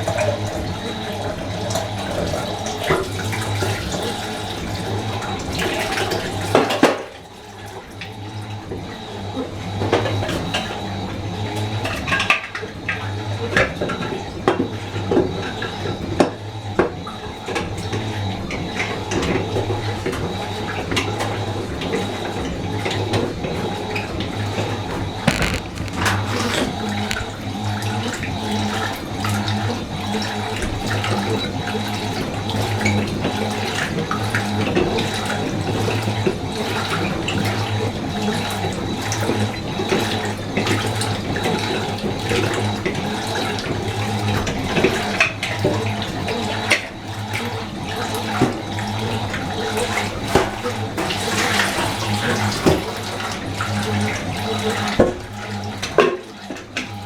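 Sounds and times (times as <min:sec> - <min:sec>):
water running into washing machine: 0:00.0 - 0:57.0.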